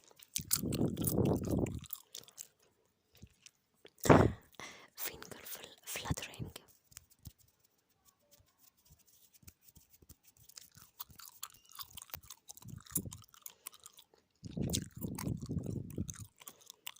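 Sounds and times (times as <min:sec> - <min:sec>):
gum chewing clicks and smacks: 0:00.0 - 0:06.4, 0:10.4 - 0:16.9.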